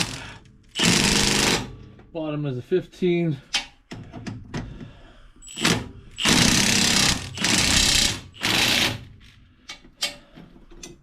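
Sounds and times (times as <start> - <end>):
impact wrench hammering: 0.8 - 1.9, 5.5 - 9.1.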